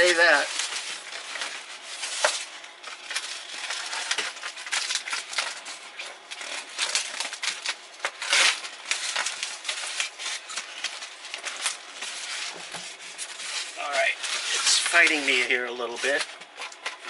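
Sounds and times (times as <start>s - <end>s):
cardboard and styrofoam scraping: 0.0s - 17.0s.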